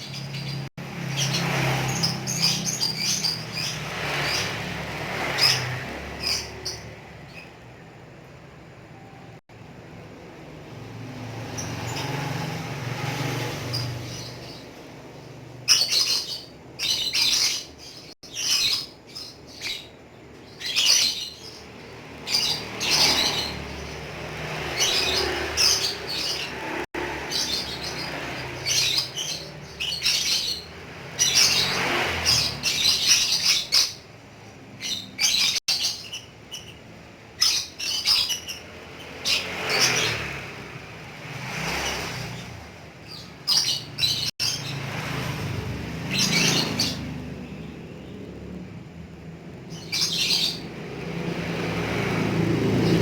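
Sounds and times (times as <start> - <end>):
lovebird chattering high chirps: 0.0 - 7.6, 15.6 - 40.4, 49.7 - 50.8.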